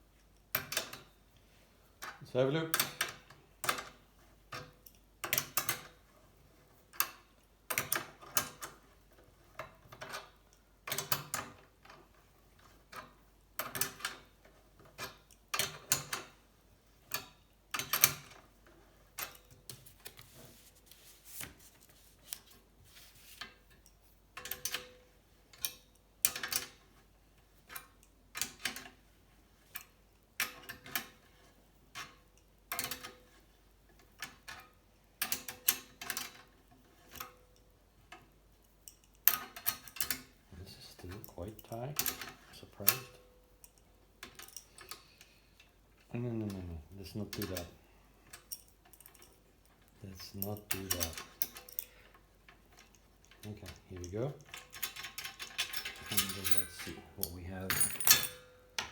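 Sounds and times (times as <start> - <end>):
hand tools clicking on metal frame: 41.0 - 45.1, 46.4 - 58.9.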